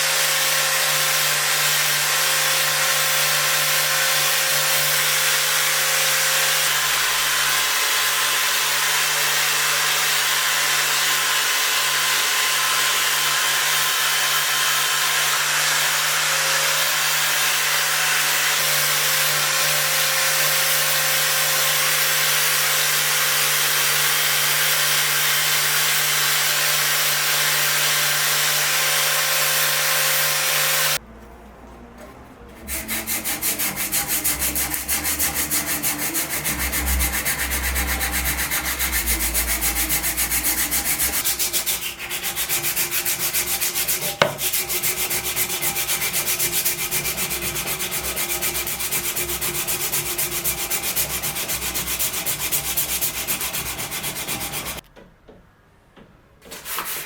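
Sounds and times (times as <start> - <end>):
wood being hand-sanded: 0.0 - 54.8, 56.5 - 57.0
steady machine noise: 31.0 - 42.1.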